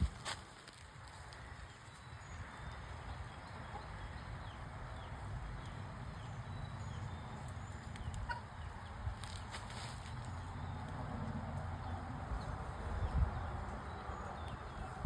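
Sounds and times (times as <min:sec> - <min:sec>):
chickens clucking: 0:03.0 - 0:05.8, 0:06.9 - 0:10.5.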